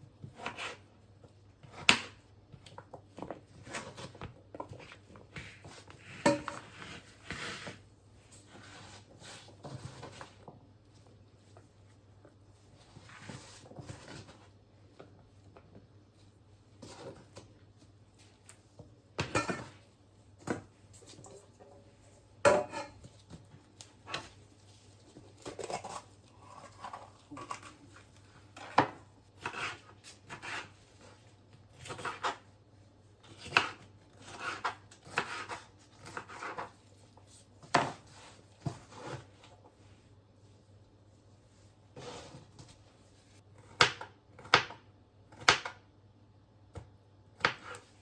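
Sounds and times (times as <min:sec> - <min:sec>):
kitchen utensils and dishes clattering: 0:19.2 - 0:19.8, 0:20.5 - 0:23.1, 0:25.4 - 0:29.1.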